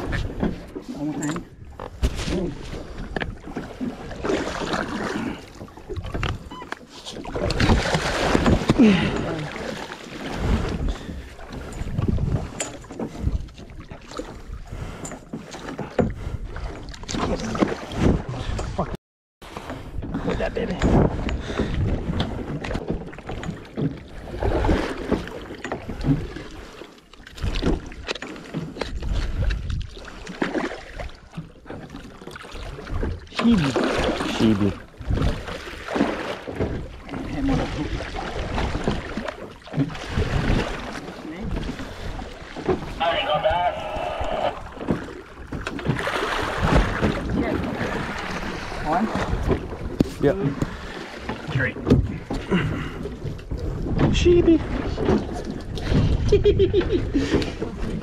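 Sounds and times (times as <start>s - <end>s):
water splashing against boat: 0.0s - 58.0s
wind: 0.0s - 58.0s
wind on microphone: 10.3s - 13.6s, 53.5s - 58.0s.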